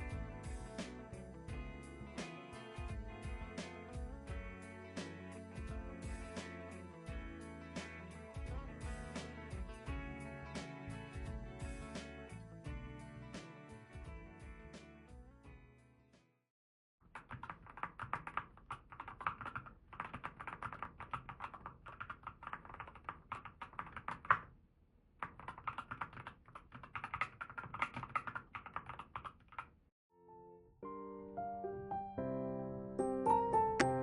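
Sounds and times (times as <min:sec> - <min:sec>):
fast keyboard typing: 0:17.1 - 0:24.5, 0:25.2 - 0:29.7
background piano music: 0:30.2 - 0:34.0.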